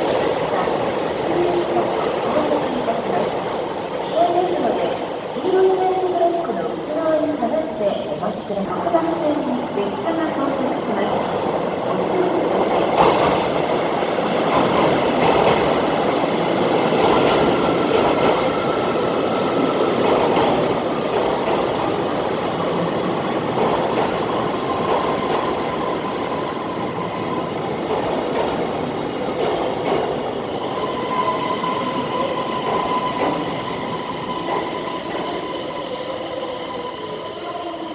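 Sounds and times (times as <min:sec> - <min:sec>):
train wheels rumbling on rails: 0:08.6 - 0:37.9.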